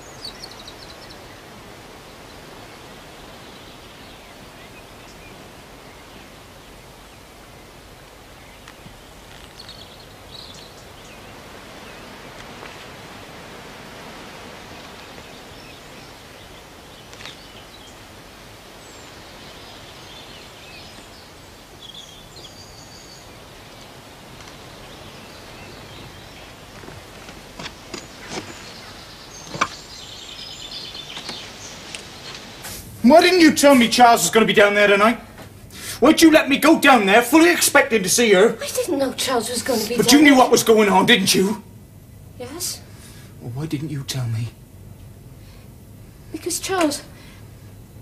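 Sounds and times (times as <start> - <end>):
faint high bird chirps: 0.0 - 7.7, 8.3 - 12.4, 14.6 - 24.0
even noisy hiss: 0.0 - 48.0.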